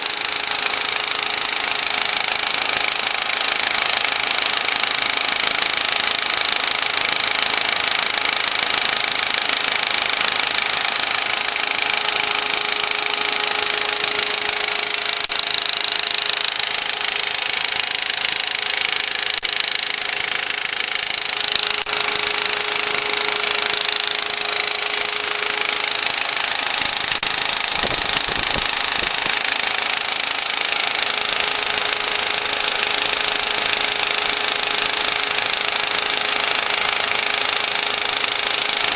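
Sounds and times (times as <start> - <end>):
car engine running: 11.6 - 32.9.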